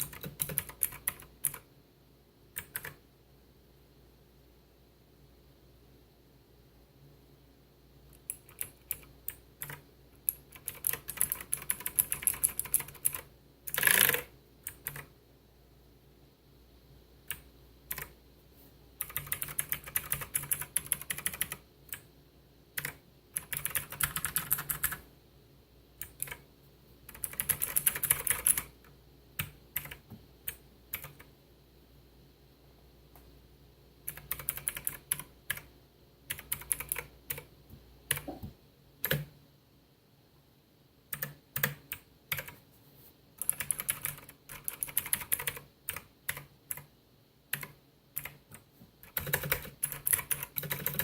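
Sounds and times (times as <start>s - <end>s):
typing on clicky mechanical keyboard: 0.0s - 1.7s, 2.6s - 3.0s, 8.3s - 15.1s, 17.3s - 18.1s, 19.0s - 22.1s, 22.8s - 25.0s, 26.0s - 26.4s, 27.1s - 28.7s, 29.4s - 31.3s, 34.1s - 35.7s, 36.3s - 37.5s, 41.1s - 42.6s, 43.4s - 46.9s, 47.5s - 51.0s.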